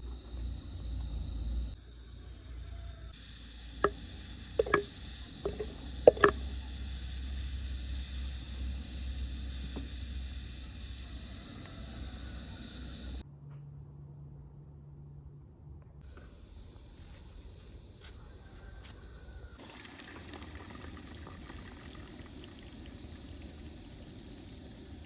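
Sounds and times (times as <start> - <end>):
utensil clinking against pot: 4.6 - 4.9, 5.5 - 6.4.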